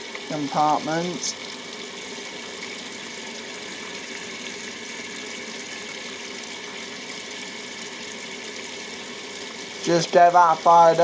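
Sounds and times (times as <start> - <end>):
washing machine filling with water: 0.0 - 11.0.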